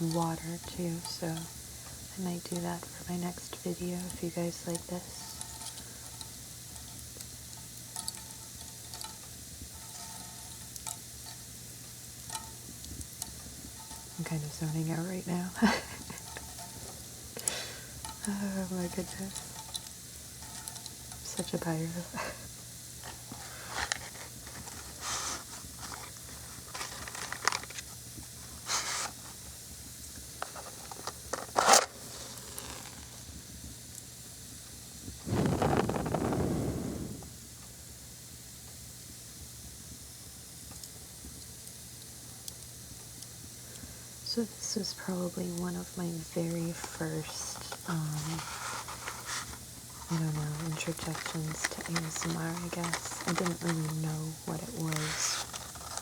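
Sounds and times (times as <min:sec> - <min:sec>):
fire crackling and popping: 0:00.0 - 0:44.1, 0:46.6 - 0:56.0
soft sizzling hiss: 0:00.0 - 0:56.0
match being struck: 0:31.4 - 0:33.2, 0:35.2 - 0:37.4
breath blowing on microphone: 0:35.2 - 0:37.4.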